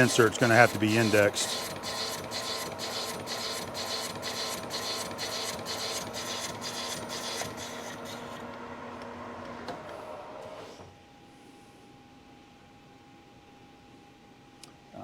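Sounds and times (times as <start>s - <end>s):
lathe cutting steel: 0.0s - 8.5s
steady machine hum: 0.0s - 15.0s.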